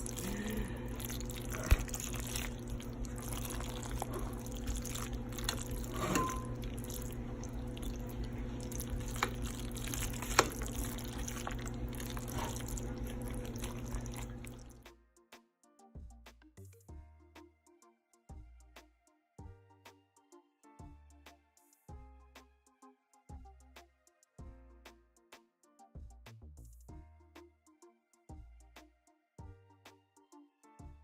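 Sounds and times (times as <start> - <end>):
steady hum: 0.0 - 14.8
wet sticky squelching: 0.0 - 14.8.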